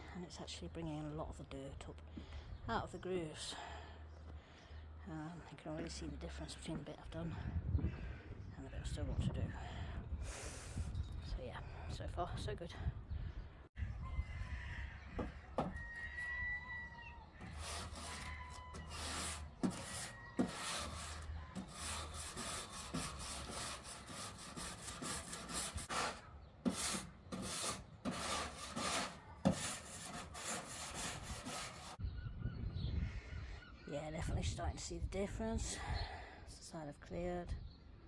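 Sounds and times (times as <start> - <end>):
brush scrubbing wooden decking: 17.4 - 32.0.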